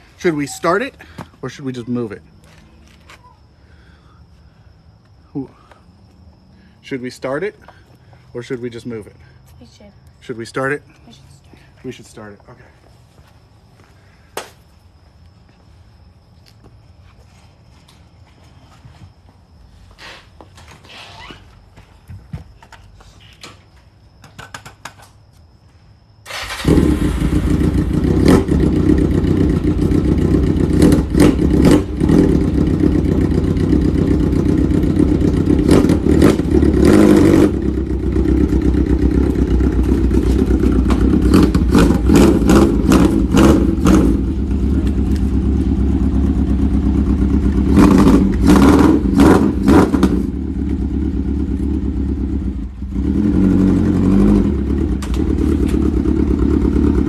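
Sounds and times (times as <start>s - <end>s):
motorcycle engine revving: 26.3s - 57.0s.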